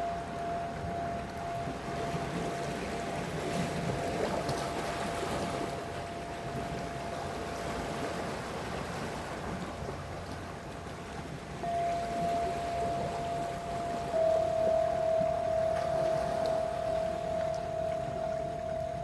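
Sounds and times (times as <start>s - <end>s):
steady tone: 0.0s - 7.8s, 11.6s - 19.0s
sea waves washing: 0.0s - 19.0s.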